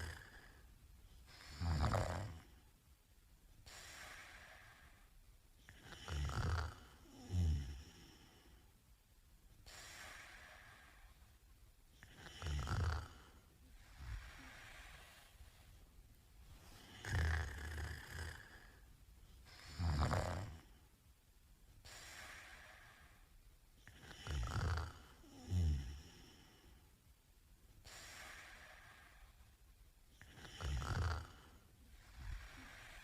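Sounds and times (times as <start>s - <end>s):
man snoring: 0.0s - 0.6s, 1.4s - 2.5s, 5.7s - 8.5s, 12.0s - 13.4s, 16.8s - 18.8s, 19.6s - 20.7s, 23.8s - 26.7s, 30.2s - 33.0s
quiet breathing: 0.0s - 33.0s.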